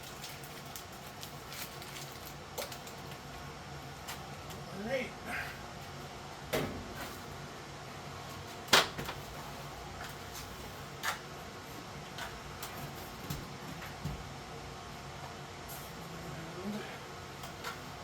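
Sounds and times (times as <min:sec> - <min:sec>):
knocks and taps on ductwork: 0:13.2 - 0:14.3.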